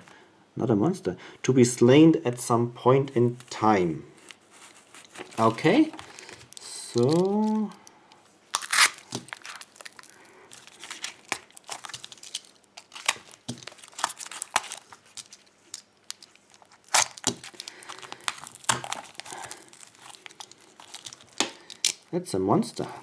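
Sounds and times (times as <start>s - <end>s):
packaging crinkling and tearing: 4.2s - 7.9s, 8.5s - 22.1s.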